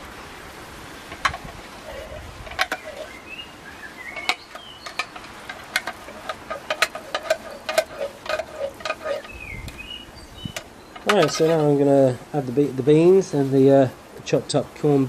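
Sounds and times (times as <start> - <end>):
small birds chirping: 1.8 - 12.4.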